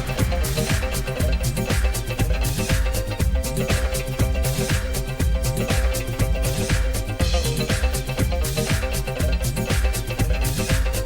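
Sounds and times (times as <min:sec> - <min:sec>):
upbeat disco music: 0:00.0 - 0:11.0.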